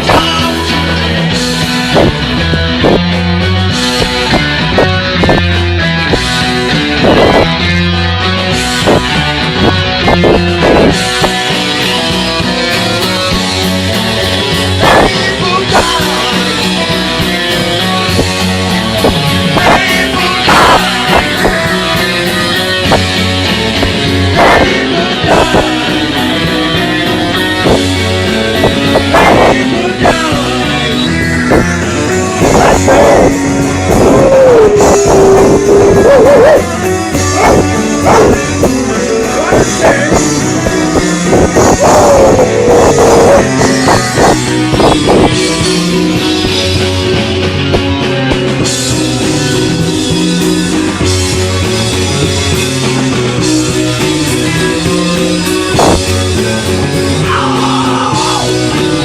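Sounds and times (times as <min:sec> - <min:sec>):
person singing: 0:00.0 - 0:01.6, 0:12.5 - 0:18.2, 0:19.4 - 0:23.4, 0:24.1 - 0:46.3, 0:53.5 - 0:59.0
rock music: 0:00.0 - 0:59.0.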